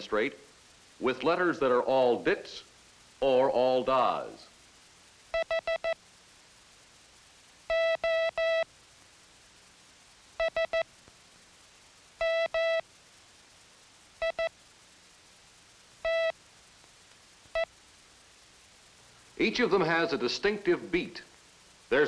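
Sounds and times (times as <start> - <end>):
morse code beeps: 5.4 - 6.0, 7.7 - 8.6, 10.4 - 10.8, 12.2 - 12.8, 16.0 - 16.3.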